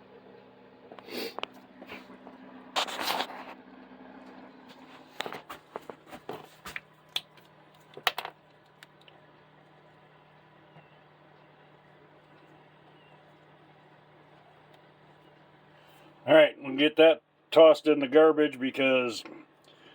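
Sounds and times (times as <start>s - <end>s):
rustling scrape: 1.8s - 3.6s.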